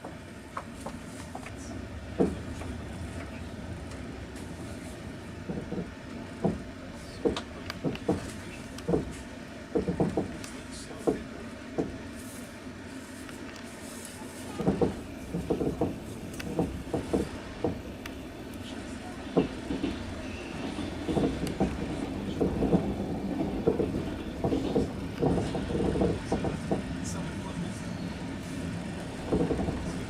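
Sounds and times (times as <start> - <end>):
train carriage rumble: 0.0 - 30.0
wheels clattering over rail joints: 14.6 - 18.1, 19.2 - 30.0.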